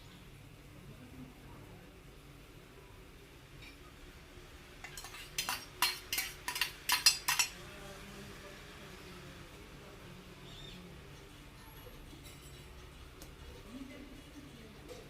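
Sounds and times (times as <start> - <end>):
spoon knocking cookware: 4.8 - 7.5.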